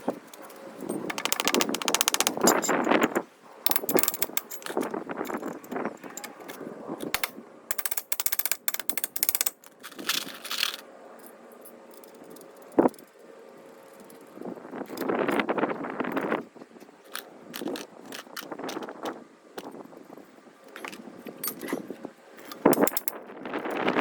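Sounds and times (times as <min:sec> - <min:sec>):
rapid mechanical clicking from tool: 0:00.3 - 0:03.1, 0:03.7 - 0:06.3, 0:07.1 - 0:10.7, 0:17.1 - 0:19.2, 0:22.4 - 0:23.2.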